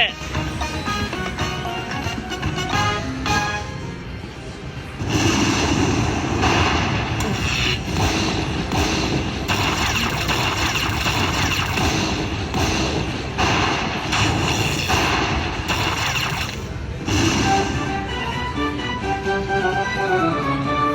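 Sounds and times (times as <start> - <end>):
slot machine noise bursts: 5.0 - 17.9.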